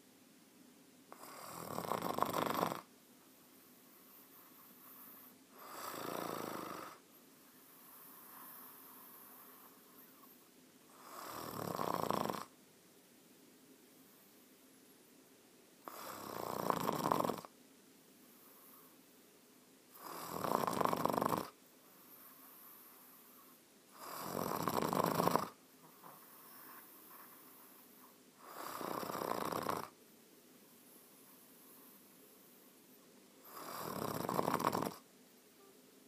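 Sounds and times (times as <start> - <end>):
person snoring: 1.1 - 2.9, 5.0 - 7.0, 10.9 - 12.5, 15.8 - 17.5, 20.0 - 21.6, 24.0 - 25.6, 28.4 - 30.0, 33.4 - 35.0
faint breathing: 3.3 - 6.1, 7.0 - 11.1, 18.2 - 19.1, 21.8 - 23.7, 25.8 - 28.9, 30.7 - 33.7.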